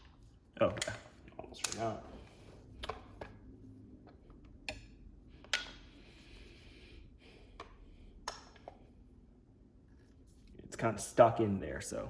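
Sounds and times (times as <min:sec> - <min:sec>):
metallic lock parts clicking: 0:00.7 - 0:02.0.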